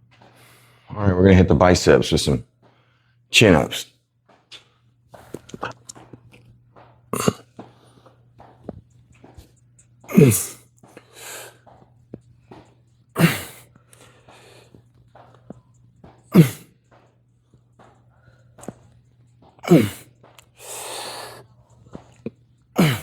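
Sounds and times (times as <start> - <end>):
steady low hum: 0.0 - 23.0
man grunting during exercise: 10.1 - 10.6, 13.2 - 13.6, 16.3 - 16.7, 19.6 - 20.1, 22.8 - 23.0.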